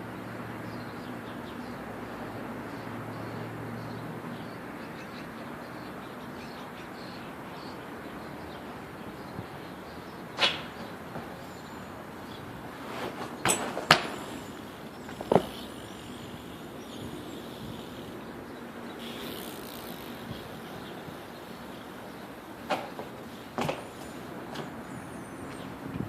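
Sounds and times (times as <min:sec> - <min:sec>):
steady background noise: 0:00.0 - 0:26.0
bike knocking on ground: 0:10.3 - 0:17.2, 0:22.6 - 0:24.8.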